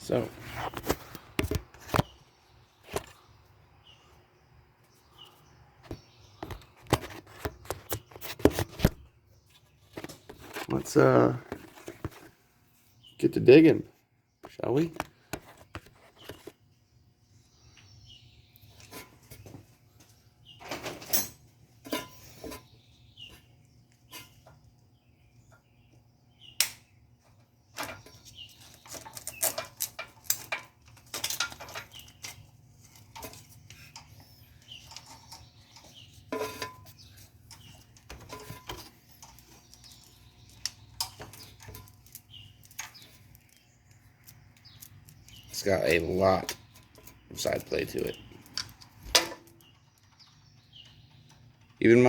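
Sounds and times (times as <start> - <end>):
tools and metal parts clanking: 20.4 - 23.4, 27.7 - 52.0.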